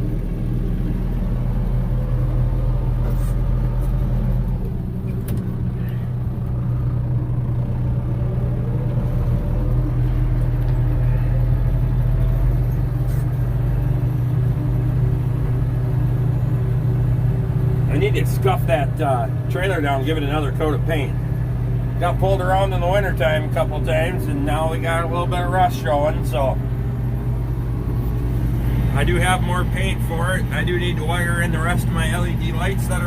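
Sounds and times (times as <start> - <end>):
vehicle engine and road noise: 0.0 - 33.0.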